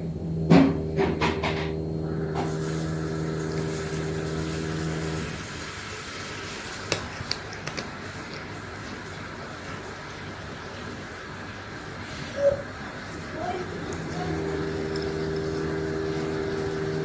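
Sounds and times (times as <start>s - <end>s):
power tool motor humming: 0.0s - 5.8s, 13.2s - 17.0s.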